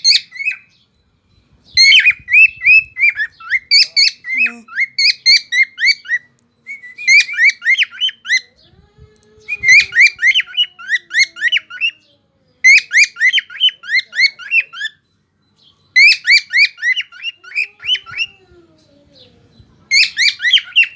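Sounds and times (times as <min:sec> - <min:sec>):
cockatiel chirping: 0:00.0 - 0:00.8, 0:01.7 - 0:08.5, 0:09.5 - 0:12.0, 0:12.6 - 0:15.0, 0:15.9 - 0:18.4, 0:19.9 - 0:20.9.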